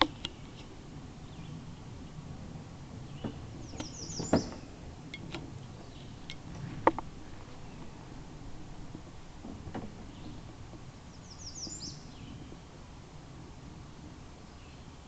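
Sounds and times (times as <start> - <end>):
steady low rumble: 0.0 - 15.0
high bird chirps: 3.2 - 4.6.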